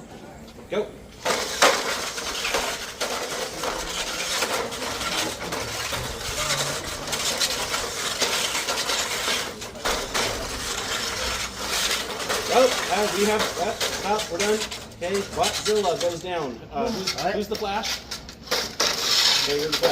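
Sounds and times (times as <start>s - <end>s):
small robots rattling and clattering: 1.2s - 16.2s.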